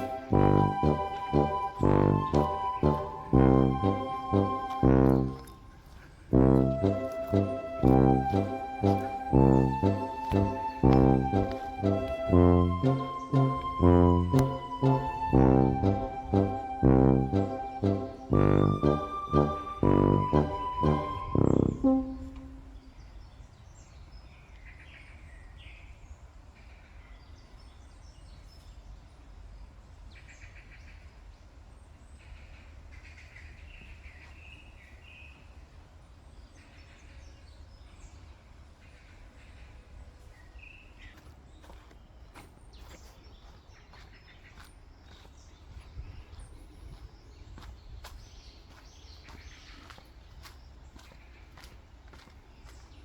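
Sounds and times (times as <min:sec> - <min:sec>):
footsteps on forest trail: 0:00.0 - 0:21.3, 0:41.0 - 0:53.0
small birds chirping: 0:40.4 - 0:53.0.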